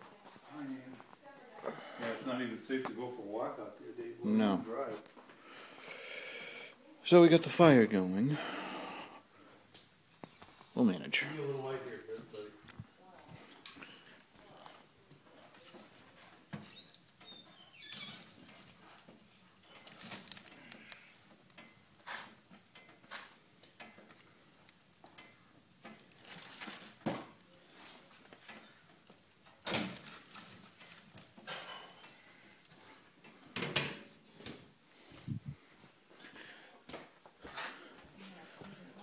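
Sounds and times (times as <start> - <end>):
faint clicks and knocks: 18.5 - 26.3.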